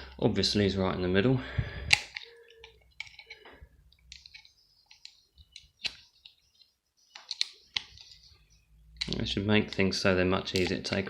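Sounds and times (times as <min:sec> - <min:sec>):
hand tools clicking on plastic: 0:01.9 - 0:08.3, 0:10.5 - 0:11.0.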